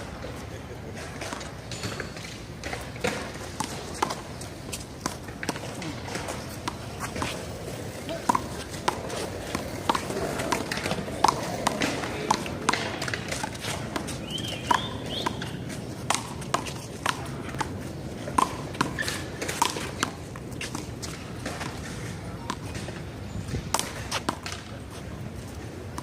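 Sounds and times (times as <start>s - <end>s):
footsteps on court: 0.0s - 26.0s.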